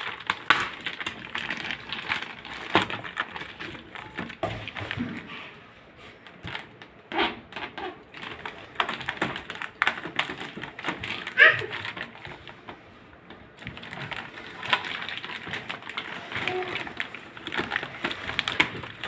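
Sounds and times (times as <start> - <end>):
packaging crinkling and clicking: 0.0 - 5.3, 6.2 - 19.0.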